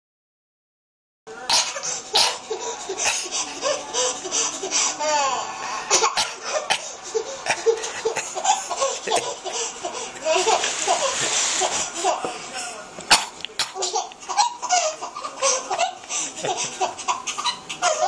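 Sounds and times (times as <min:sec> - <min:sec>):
person coughing: 0:05.9 - 0:09.4, 0:13.1 - 0:15.8
person giggling: 0:07.5 - 0:11.1, 0:13.8 - 0:18.0.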